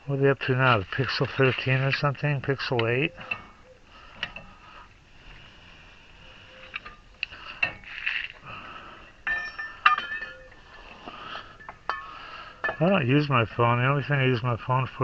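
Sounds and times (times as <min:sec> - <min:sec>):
metal tools clinking: 0:09.1 - 0:10.7, 0:11.3 - 0:13.0.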